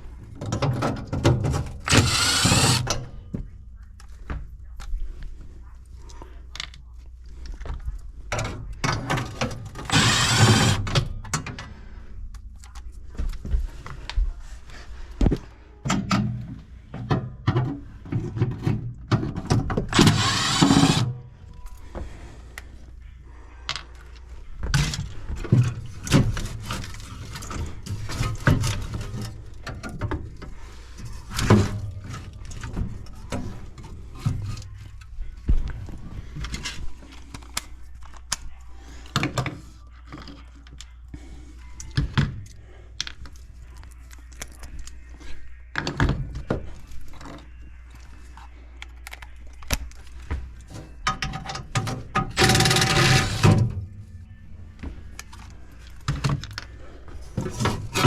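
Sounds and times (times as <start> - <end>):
cordless drill spinning out screws: 1.9 - 2.9, 9.8 - 10.9, 19.9 - 21.1.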